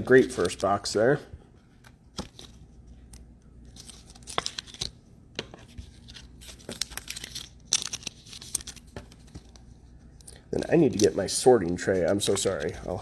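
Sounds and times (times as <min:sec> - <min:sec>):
plastic wrappers crinkling and tearing: 0:03.7 - 0:05.0, 0:05.6 - 0:09.6, 0:10.2 - 0:13.0.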